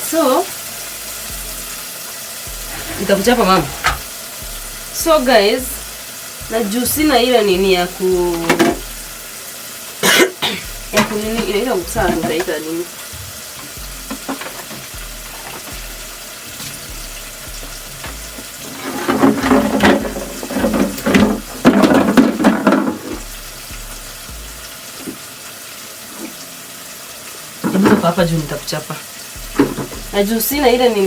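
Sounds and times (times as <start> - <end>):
food frying in a pan: 0.0 - 31.0
splashing and clattering: 8.4 - 9.0, 10.0 - 23.8, 27.6 - 28.4, 29.4 - 30.2.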